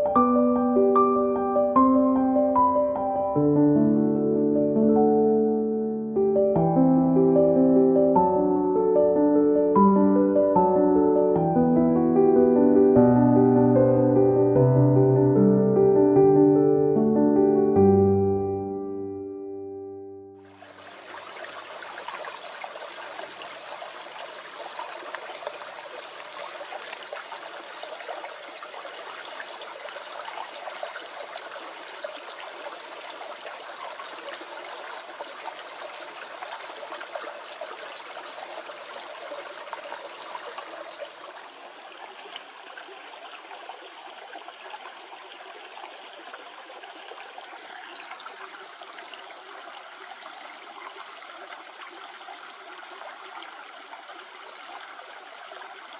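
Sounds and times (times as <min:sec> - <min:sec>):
stream water rushing: 0:20.4 - 0:55.9.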